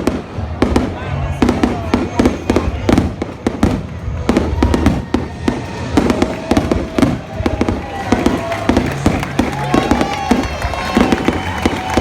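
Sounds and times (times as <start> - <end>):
fireworks bangs and crackles: 0.0 - 12.0.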